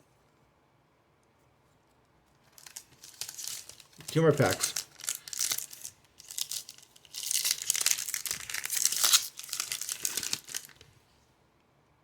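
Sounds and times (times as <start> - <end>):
foil wrapper tearing and crinkling: 2.5 - 10.8.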